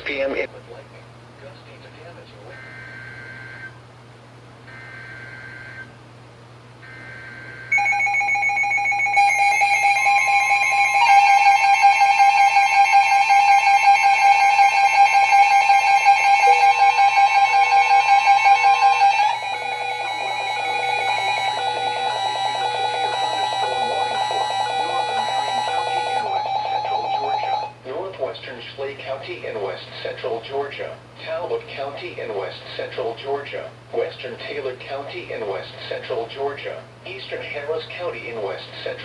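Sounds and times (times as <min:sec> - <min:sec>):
electronic alert tones: 0:07.7 - 0:27.7.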